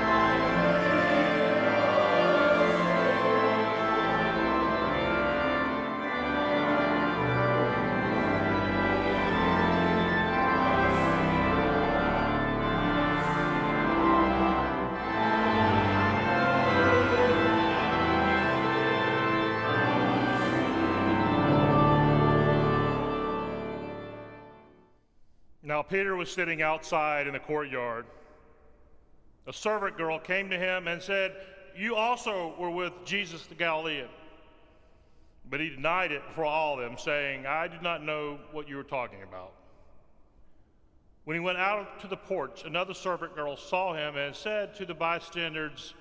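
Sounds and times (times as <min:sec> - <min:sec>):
organ playing slow chords: 0:00.0 - 0:24.8.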